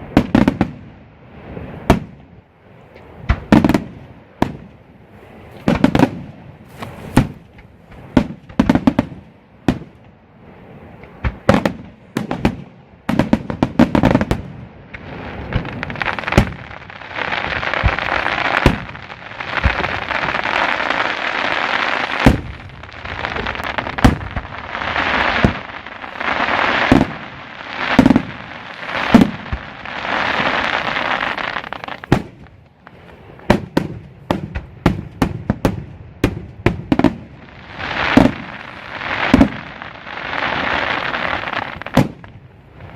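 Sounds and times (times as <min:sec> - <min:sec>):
firework bangs: 0:00.0 - 0:02.3, 0:03.1 - 0:10.0, 0:11.1 - 0:42.9
firework hissing rush: 0:06.6 - 0:07.4, 0:15.0 - 0:33.5, 0:37.4 - 0:42.0.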